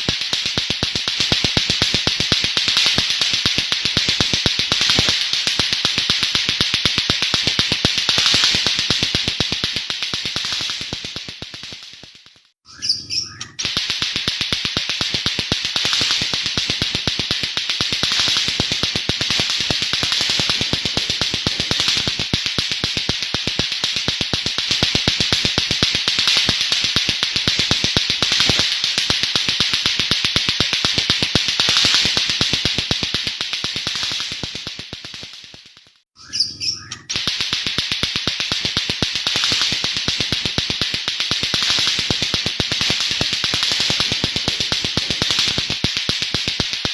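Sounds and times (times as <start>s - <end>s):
bird singing rapid clicking notes: 12.7s - 13.7s, 36.2s - 37.2s.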